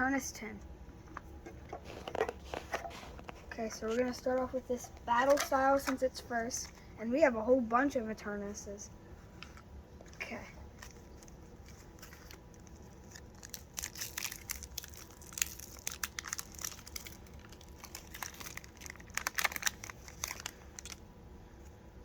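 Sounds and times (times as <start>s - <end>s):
foil wrapper crinkling and tearing: 10.8s - 21.0s
foil crinkling and tearing: 11.7s - 21.0s.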